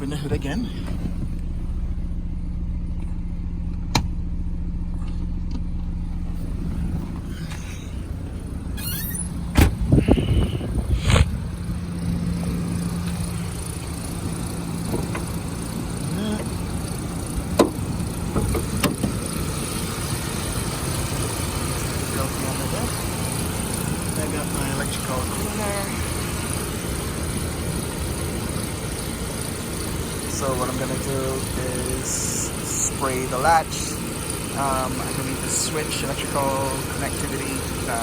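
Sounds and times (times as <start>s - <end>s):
car engine idling: 0.0s - 38.0s
sharp clicks and knocks: 17.5s - 19.2s.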